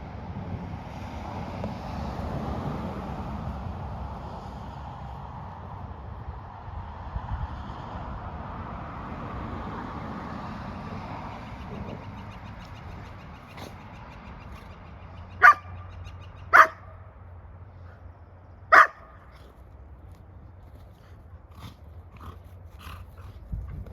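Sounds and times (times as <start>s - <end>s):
dog barking: 15.4s - 15.8s, 16.5s - 16.9s, 18.7s - 19.4s.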